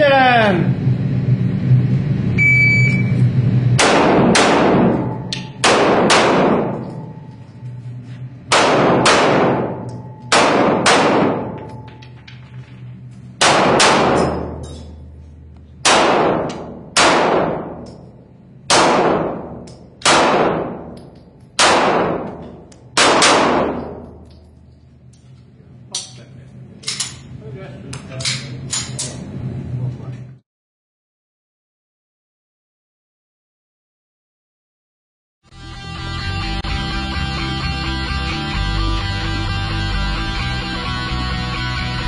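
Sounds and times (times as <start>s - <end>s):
shot timer beep: 2.4s - 3.2s
pistol shots echoing: 3.8s - 7.1s, 8.5s - 11.9s, 13.4s - 14.7s, 15.8s - 18.1s, 18.7s - 24.2s.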